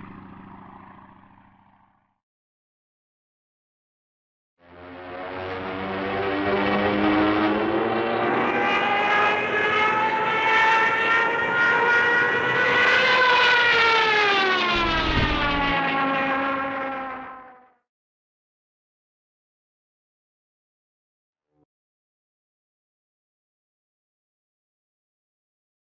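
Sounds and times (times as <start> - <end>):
propeller aircraft droning past: 0.0 - 2.2, 4.6 - 17.8.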